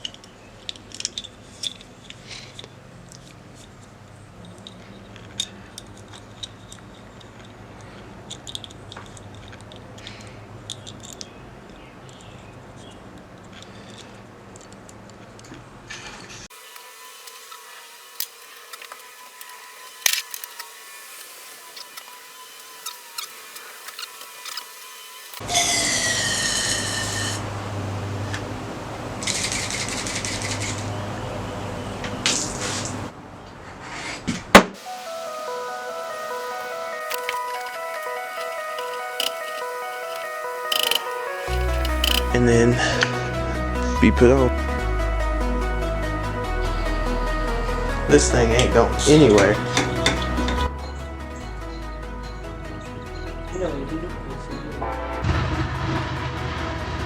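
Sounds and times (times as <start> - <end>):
high whine: 16.5 - 33.1, 34.8 - 53.6, 54.8 - 57.0
small motor humming: 16.5 - 33.1
steady low hum: 25.4 - 33.1.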